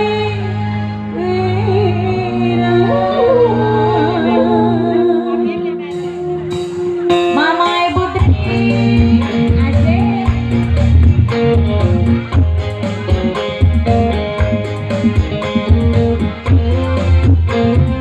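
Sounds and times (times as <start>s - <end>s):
live band melody: 0.0s - 18.0s
drum beat: 6.0s - 18.0s.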